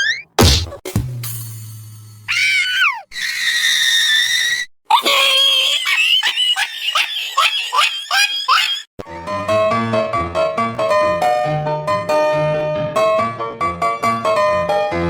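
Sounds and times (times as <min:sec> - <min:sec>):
shrill screaming: 0:02.3 - 0:08.9
piano music: 0:09.2 - 0:15.0.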